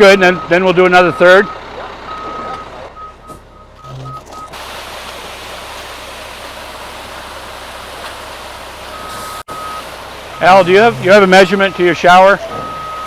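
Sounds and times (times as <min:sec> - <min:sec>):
reversing alarm beeps: 0:00.1 - 0:04.6, 0:08.9 - 0:13.0.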